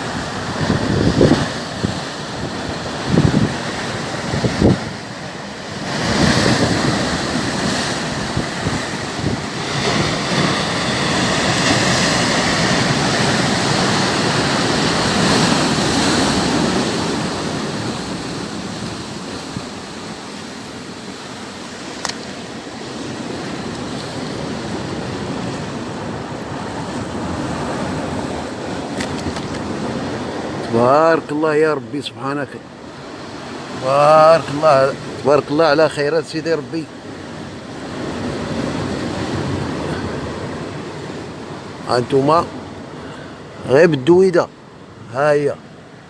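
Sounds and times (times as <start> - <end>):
wind on microphone: 0.0 - 30.6
sea surf washing ashore: 0.0 - 46.0.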